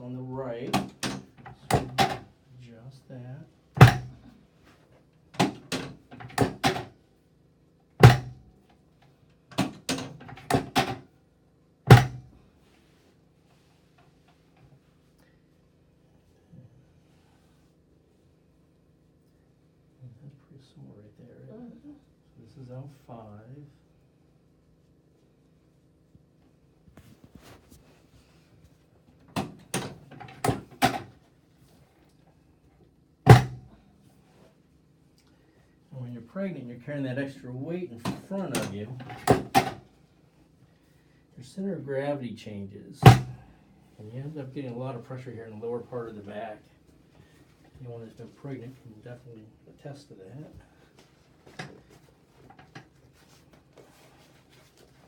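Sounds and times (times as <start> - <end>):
chiropractic table clunking: 0.7 - 2.3, 3.8 - 4.3, 5.4 - 6.9, 8.0 - 8.4, 9.6 - 11.0, 11.9 - 12.3, 29.3 - 31.2, 33.3 - 33.7, 38.0 - 39.8, 43.0 - 43.4
loud clunk of table section: 3.8 - 4.2, 8.0 - 8.4, 11.9 - 12.3, 33.3 - 33.6, 43.0 - 43.4.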